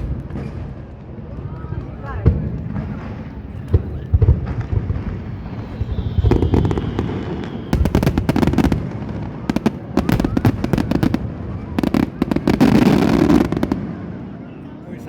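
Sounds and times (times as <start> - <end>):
fireworks popping: 0.0 - 13.9
fireworks booming: 0.0 - 14.4
faint thin whistle: 4.8 - 8.7, 14.3 - 14.9.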